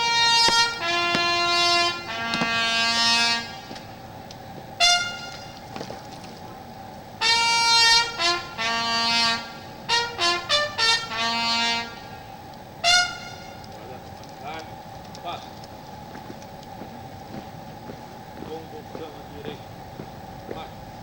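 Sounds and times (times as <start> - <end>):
bugle call: 0.0 - 15.8.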